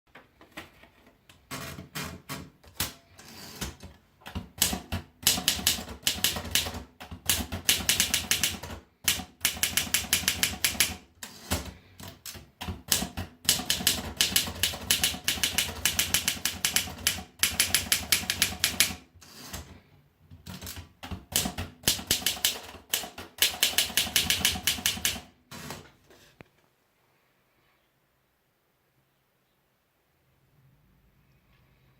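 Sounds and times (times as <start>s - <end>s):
typewriter key strikes: 4.3s - 11.0s, 12.3s - 19.0s, 20.5s - 25.3s.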